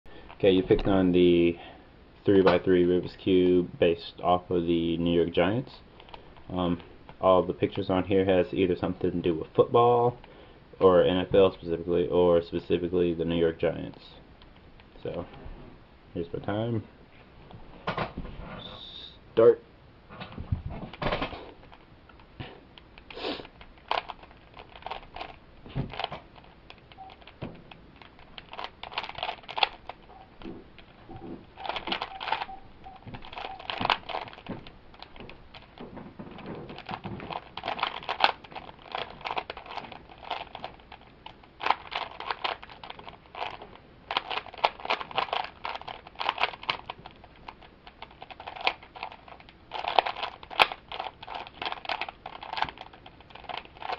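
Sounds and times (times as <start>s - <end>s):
puzzle cube clicking and rattling: 5.9s - 7.8s, 20.8s - 53.9s.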